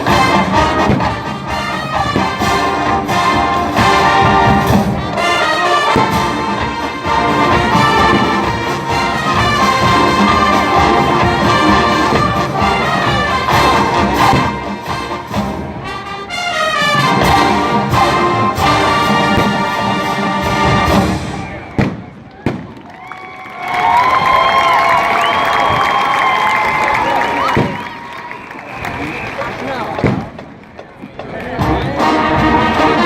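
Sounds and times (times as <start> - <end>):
marching band playing brass music: 0.0 - 22.7, 31.4 - 33.0
drums: 0.0 - 22.8, 23.8 - 28.0, 28.8 - 33.0.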